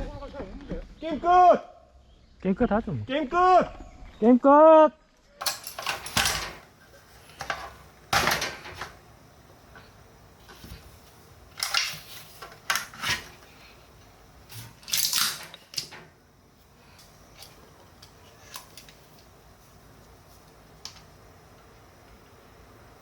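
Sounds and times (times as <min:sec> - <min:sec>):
clattering and rustling: 0:05.4 - 0:09.0, 0:09.8 - 0:13.6.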